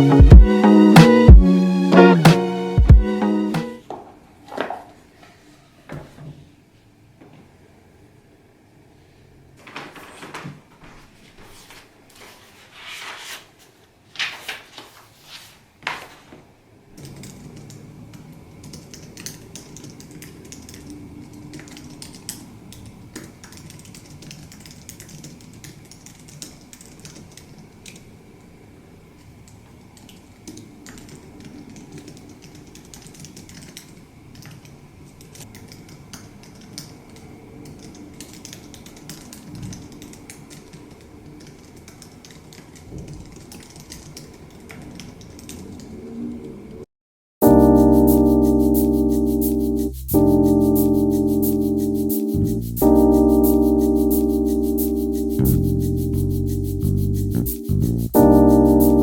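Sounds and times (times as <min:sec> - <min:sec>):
typing on a keyboard: 0:17.0 - 0:28.0, 0:30.0 - 0:45.9.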